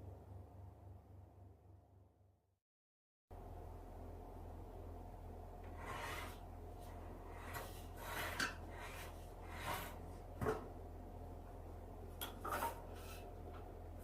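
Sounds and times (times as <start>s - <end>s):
low electrical hum: 0.0s - 2.5s, 3.3s - 14.0s
scraping rubs: 5.7s - 10.2s.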